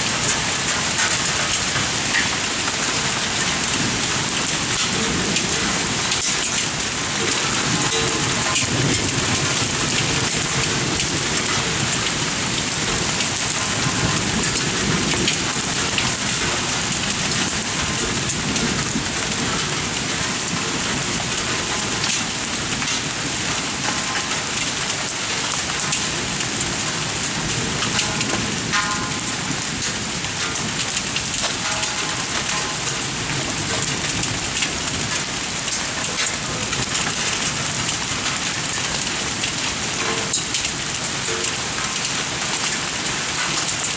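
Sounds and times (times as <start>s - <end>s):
hailstones ticking: 0.0s - 43.9s
heavy rain hiss: 0.0s - 43.9s.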